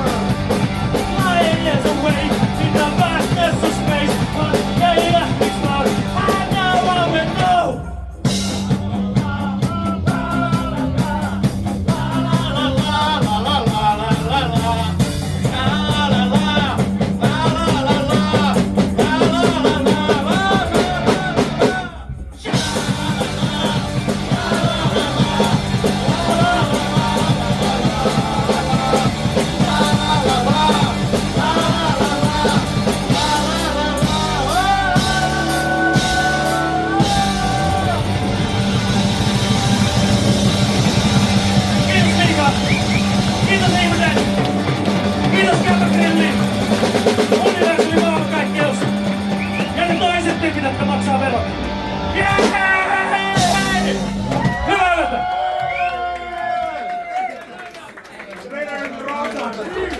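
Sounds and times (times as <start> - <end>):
person singing lead vocal: 0.0 - 38.5, 45.0 - 51.5, 52.1 - 54.1
live rock band playing: 0.0 - 55.6.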